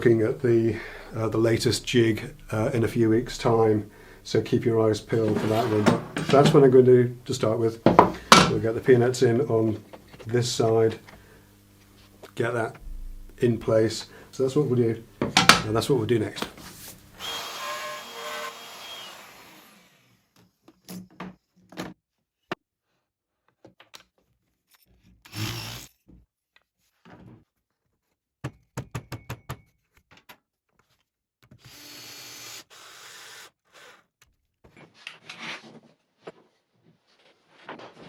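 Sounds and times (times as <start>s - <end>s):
steady noise: 0.0s - 6.3s, 12.5s - 16.0s.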